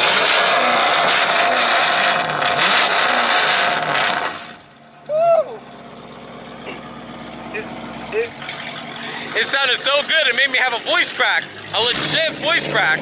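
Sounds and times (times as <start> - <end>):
car engine revving loudly: 0.0 - 4.7, 6.0 - 13.0
person whooping: 5.1 - 5.7.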